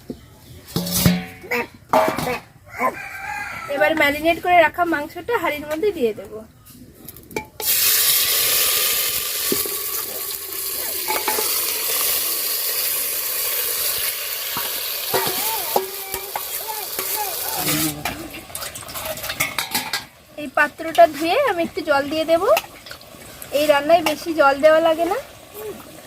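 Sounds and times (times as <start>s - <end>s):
meat sizzling in a pot: 7.6s - 26.0s.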